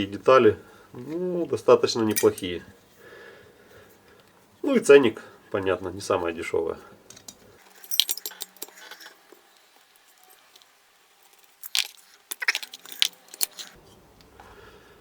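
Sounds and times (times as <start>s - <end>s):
metal parts and tools clinking: 2.0s - 2.7s, 7.1s - 9.4s, 11.3s - 13.8s.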